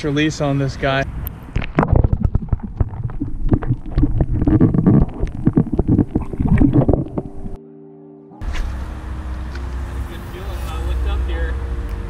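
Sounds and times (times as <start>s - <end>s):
microphone handling noise: 1.4s - 7.6s.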